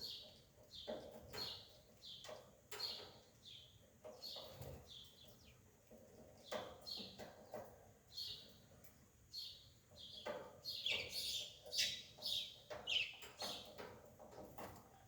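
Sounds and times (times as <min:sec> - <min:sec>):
small bird chirping: 0:09.4 - 0:13.8.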